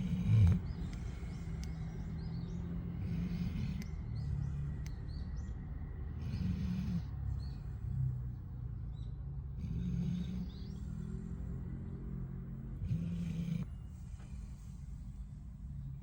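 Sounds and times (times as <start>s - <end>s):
dog snoring: 0.0s - 4.6s, 6.1s - 8.2s, 9.5s - 14.0s.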